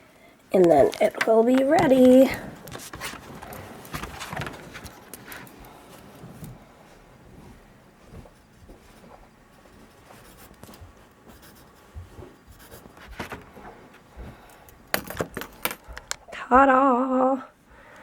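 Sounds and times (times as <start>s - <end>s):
light knocks handling paper: 1.0s - 5.8s
pen scratching on paper: 9.6s - 10.7s, 11.3s - 13.4s.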